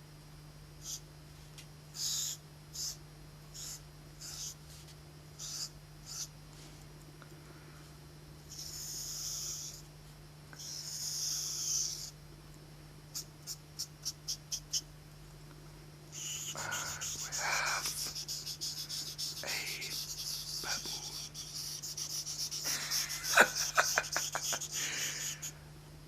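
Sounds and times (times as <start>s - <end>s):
steady low hum: 0.0s - 26.0s
pencil strokes on paper: 16.2s - 24.8s.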